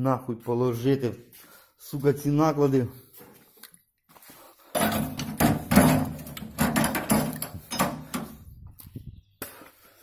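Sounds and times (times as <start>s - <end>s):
metal tools clattering: 4.8s - 8.4s.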